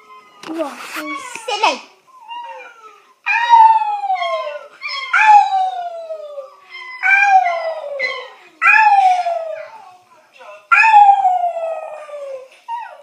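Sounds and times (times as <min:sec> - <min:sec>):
puppy howling: 0:02.2 - 0:10.0.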